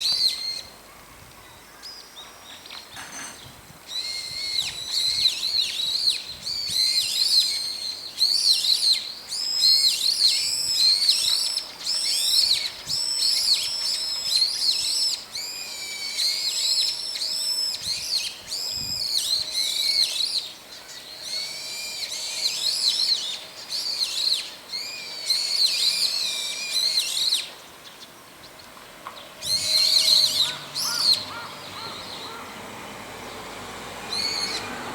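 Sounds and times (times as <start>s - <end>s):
birds calling: 0.0s - 34.9s.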